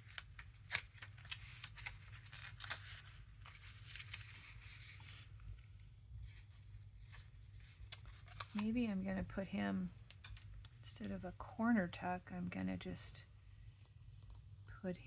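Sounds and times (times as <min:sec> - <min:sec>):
paper rustling: 0:00.0 - 0:05.4, 0:06.2 - 0:08.8.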